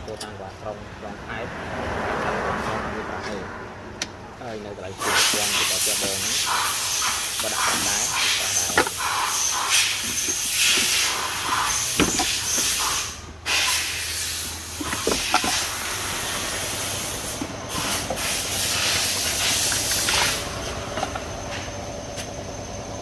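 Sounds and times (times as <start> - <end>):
pressurised gas hissing from nozzle: 4.9 - 21.2.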